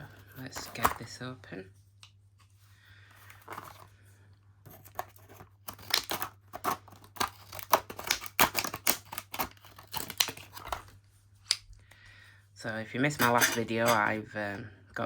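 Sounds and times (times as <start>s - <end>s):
plastic packaging crinkling: 4.7s - 11.0s.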